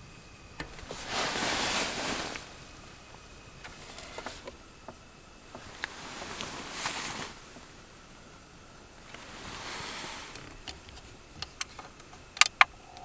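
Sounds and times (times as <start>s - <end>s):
rustling noise: 0.6s - 12.5s
light clicks and knocks: 10.3s - 13.0s.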